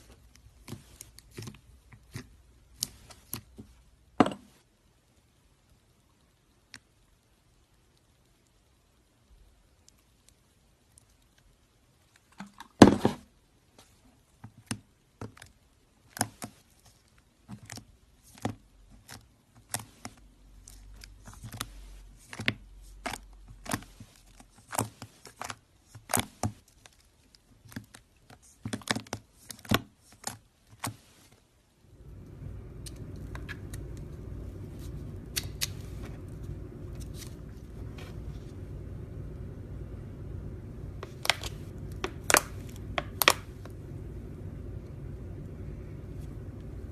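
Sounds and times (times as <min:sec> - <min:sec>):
steady low hum: 0:31.8 - 0:46.9.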